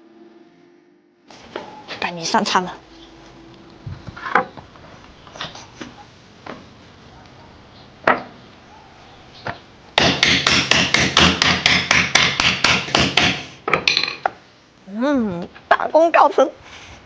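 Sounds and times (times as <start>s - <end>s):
sharp knocks: 8.0s - 8.4s, 9.4s - 14.4s.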